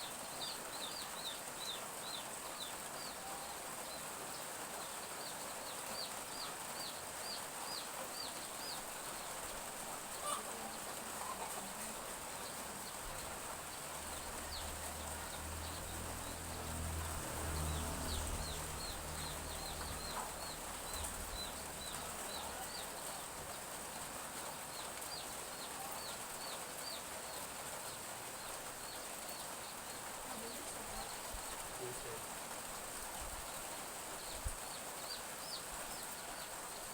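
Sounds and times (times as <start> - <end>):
light drizzle hissing: 0.0 - 36.9
chicks peeping: 5.1 - 27.4.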